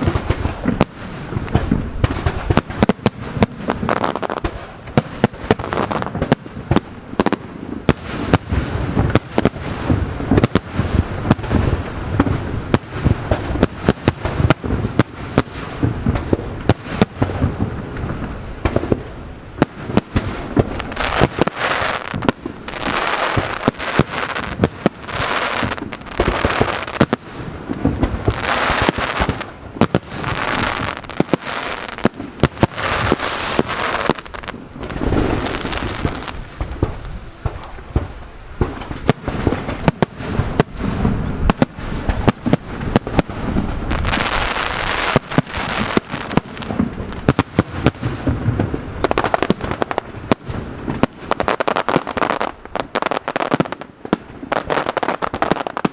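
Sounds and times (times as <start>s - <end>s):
firework bangs: 0.0s - 55.9s
fireworks crackling hiss: 0.0s - 55.9s.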